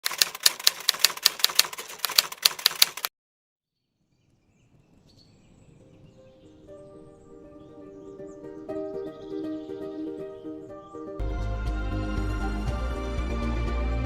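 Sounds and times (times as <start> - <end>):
keyboard typing clicks: 0.0 - 3.1.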